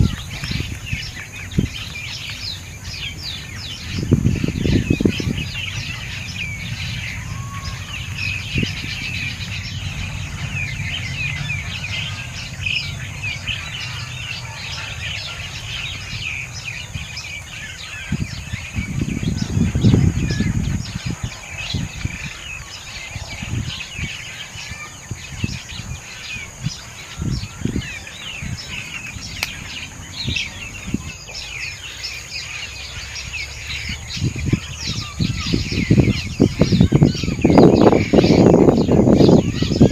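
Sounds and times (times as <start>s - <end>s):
small birds chirping: 0.0s - 39.9s
low rumble: 2.4s - 24.1s, 26.6s - 32.0s.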